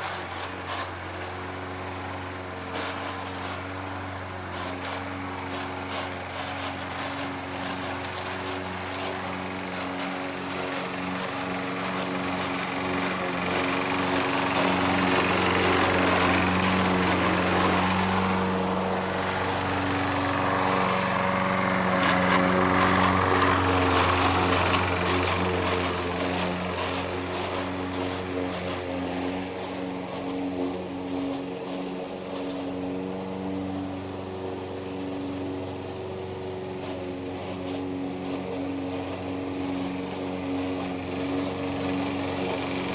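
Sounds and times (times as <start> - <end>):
lawn mower engine running: 0.0 - 42.9.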